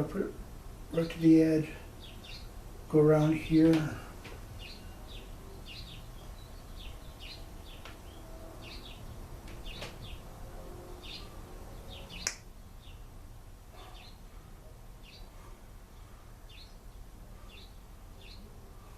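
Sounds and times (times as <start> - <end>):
small bird chirping: 2.0 - 2.6, 4.6 - 10.2, 11.0 - 13.1, 15.0 - 18.6.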